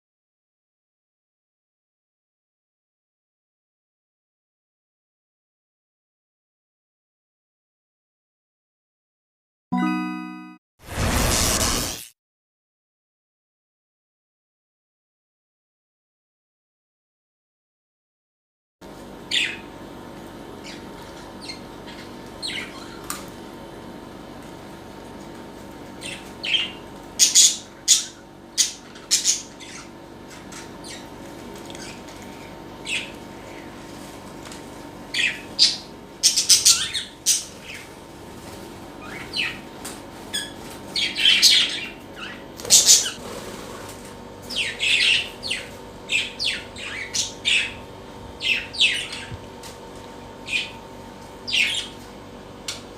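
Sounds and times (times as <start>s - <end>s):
birds chirping and squawking: 19.3s - 19.7s, 20.6s - 23.0s, 26.0s - 33.8s, 35.1s - 37.9s, 39.0s - 39.7s, 40.3s - 43.7s, 44.5s - 49.4s, 50.4s - 50.8s, 51.4s - 52.0s.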